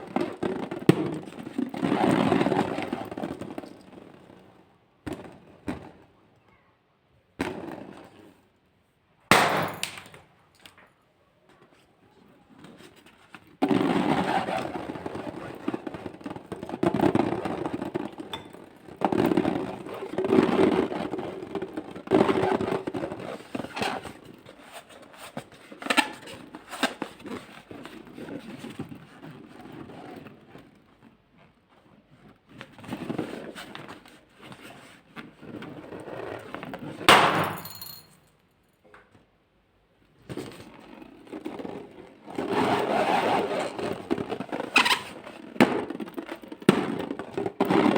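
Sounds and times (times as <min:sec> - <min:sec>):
sharp snap: 0:09.3 - 0:10.2.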